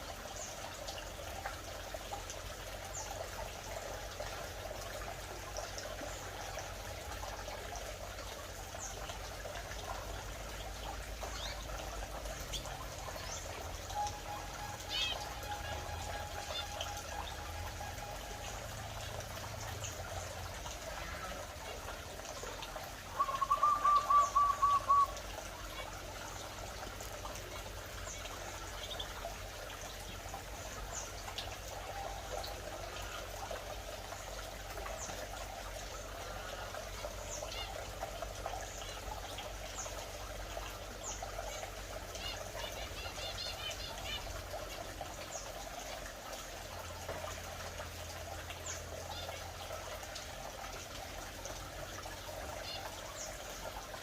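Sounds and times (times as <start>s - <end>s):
birds chirping: 11.0s - 18.7s, 22.4s - 25.3s.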